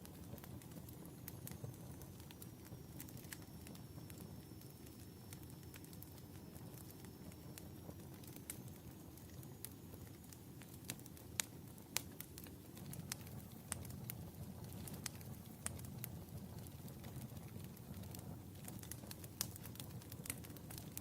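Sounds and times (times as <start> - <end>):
low rumble of flames: 0.0 - 21.0
wood fire crackling and popping: 0.0 - 21.0.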